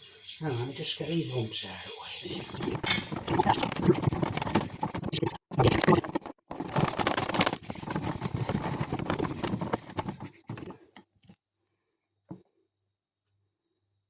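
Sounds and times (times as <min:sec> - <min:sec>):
mixture beaten in a bowl: 0:00.0 - 0:05.2, 0:05.8 - 0:10.9.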